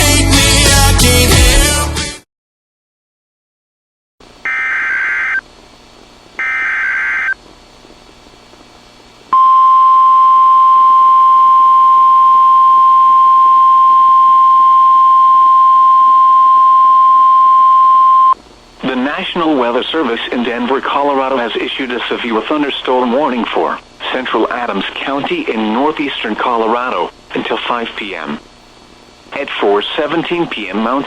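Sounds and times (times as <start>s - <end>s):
buzzy data tones: 4.5s - 5.4s, 6.4s - 7.4s.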